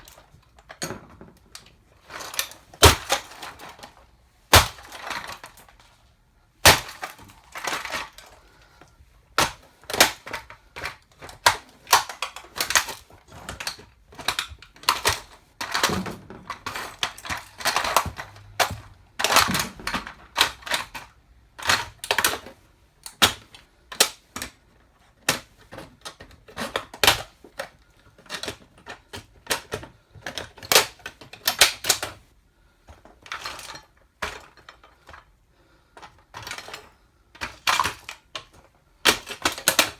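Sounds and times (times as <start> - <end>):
toy car cracking under heels: 0.0 - 5.9, 6.6 - 8.6, 9.3 - 24.6, 37.4 - 39.9.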